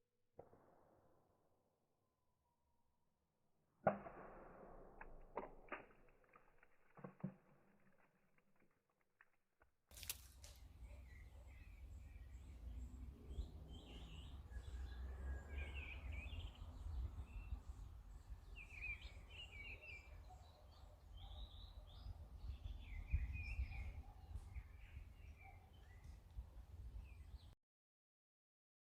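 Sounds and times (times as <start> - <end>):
small birds chirping: 10.0 - 27.6
wind rumble on microphone: 13.3 - 19.1, 21.7 - 27.5.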